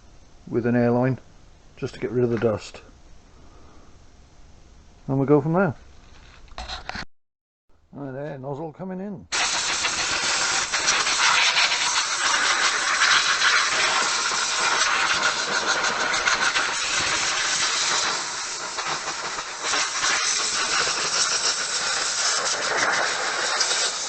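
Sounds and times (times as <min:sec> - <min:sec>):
air blow gun hissing: 0:09.3 - 0:24.0.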